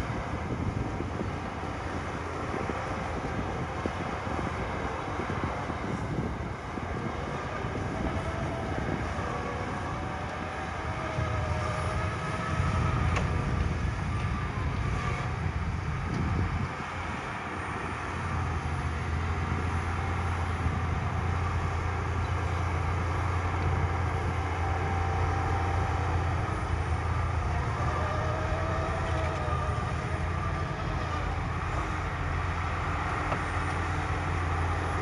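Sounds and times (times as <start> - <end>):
diesel machinery engine rumble: 0.0 - 35.0.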